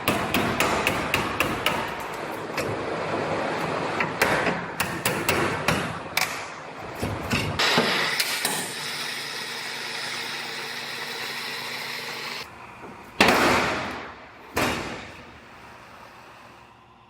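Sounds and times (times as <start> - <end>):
hammering on metal: 0.0 - 2.0
steady tool noise: 7.6 - 12.5.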